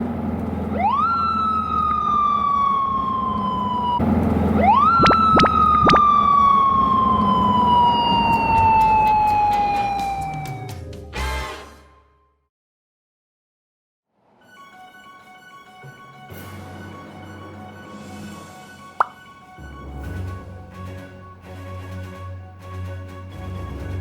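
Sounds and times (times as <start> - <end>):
motorcycle siren: 0.7 - 10.8.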